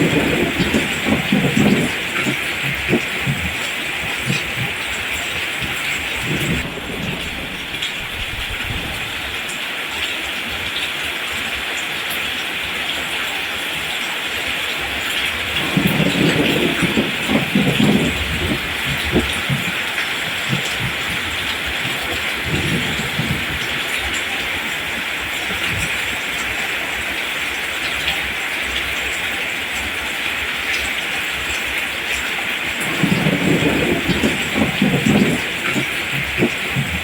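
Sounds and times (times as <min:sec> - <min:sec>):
distant thunder rumbles: 0:00.0 - 0:09.8, 0:15.3 - 0:26.3, 0:31.3 - 0:37.0
rain hissing on plants: 0:00.0 - 0:37.0.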